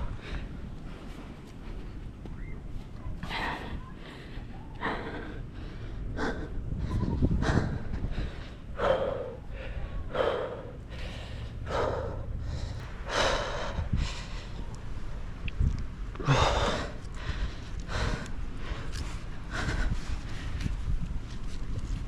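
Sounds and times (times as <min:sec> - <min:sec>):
wind rumble on microphone: 0:00.0 - 0:22.0
person breathing hard: 0:03.2 - 0:14.8, 0:16.2 - 0:20.9.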